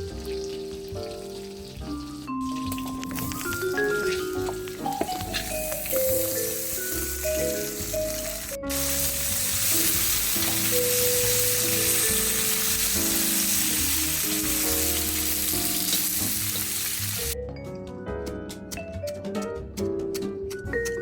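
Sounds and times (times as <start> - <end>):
food sizzling in hot fat: 0.0 - 17.4
background music with mallet notes: 0.0 - 21.0.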